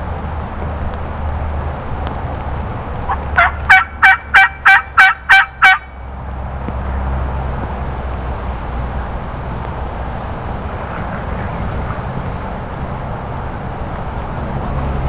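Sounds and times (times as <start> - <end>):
road noise: 0.0 - 15.0
truck engine hum: 0.0 - 15.0.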